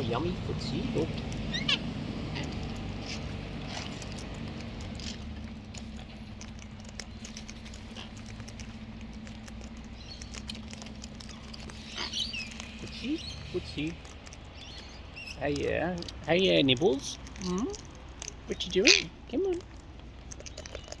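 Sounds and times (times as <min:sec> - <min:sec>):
beaks cracking seed: 0:02.4 - 0:21.0.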